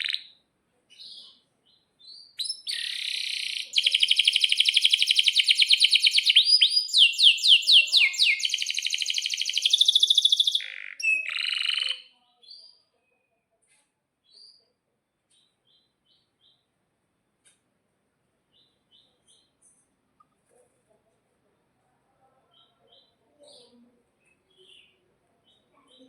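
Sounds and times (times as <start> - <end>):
canary singing trills: 0.0 - 13.0.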